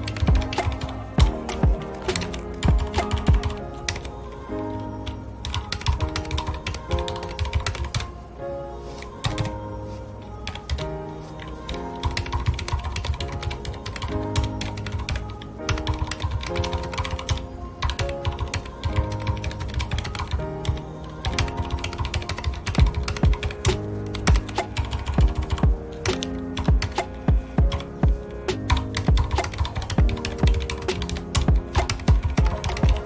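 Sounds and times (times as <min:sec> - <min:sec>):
soft background music: 0:00.0 - 0:33.0
typing on mechanical keyboard: 0:12.1 - 0:27.1, 0:28.6 - 0:33.0.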